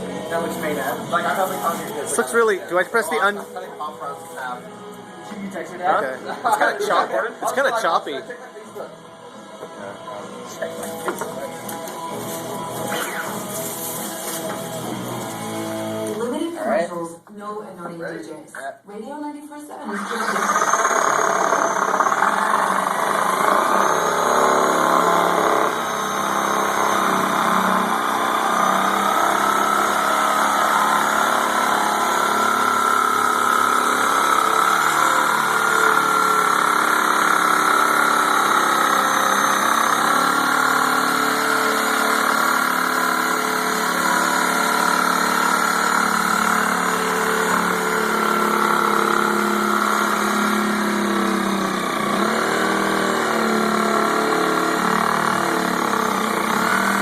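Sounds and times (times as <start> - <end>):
reciprocating saw cutting: 11.0 - 16.3, 19.8 - 57.0.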